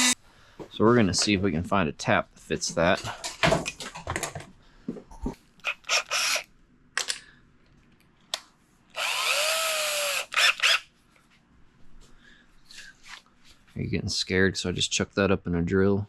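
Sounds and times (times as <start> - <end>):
power drill motor whine: 5.6 - 6.5, 9.0 - 10.8.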